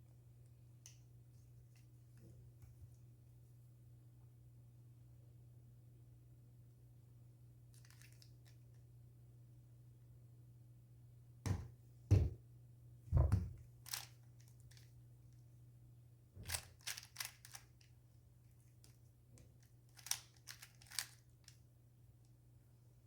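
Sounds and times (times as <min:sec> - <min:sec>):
speed cube plastic clicks: 0:16.5 - 0:17.6, 0:19.9 - 0:21.2.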